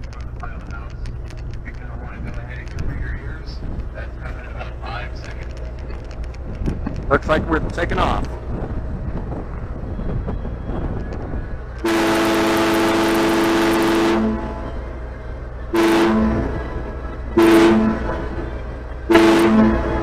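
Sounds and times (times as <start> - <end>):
low engine rumble: 0.0 - 20.0
boat horn blasts: 11.8 - 14.9, 15.6 - 20.0.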